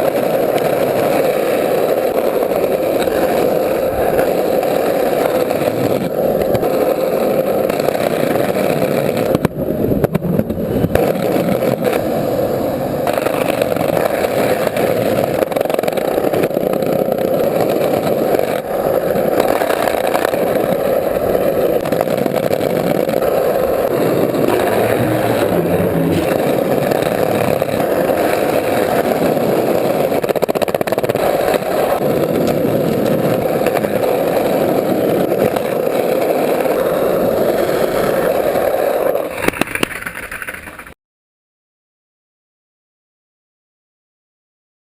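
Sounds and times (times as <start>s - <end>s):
engine-like drone: 9.8s - 30.3s.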